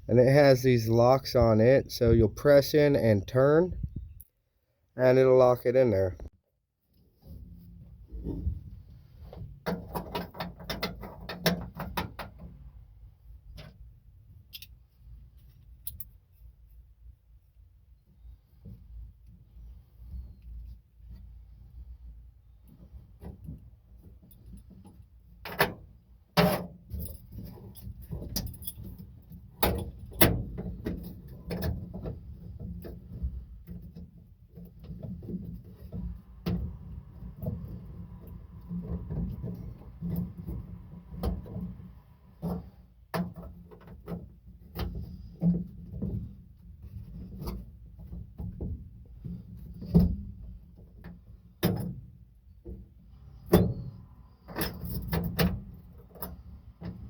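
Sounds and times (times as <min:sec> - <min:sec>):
metallic clicks and jangles: 0:15.8 - 0:16.2, 0:27.0 - 0:29.0.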